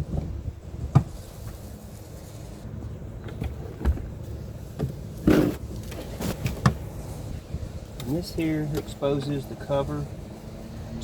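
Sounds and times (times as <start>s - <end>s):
car seat clicks and knocks: 0.9s - 1.2s.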